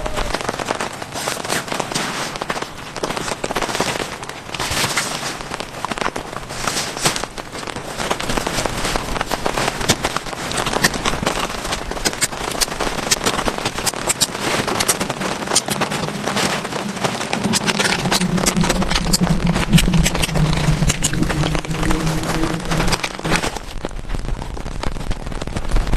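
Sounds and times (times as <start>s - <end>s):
heavy rain patter: 0.0s - 25.9s
low steady hum: 14.9s - 24.4s.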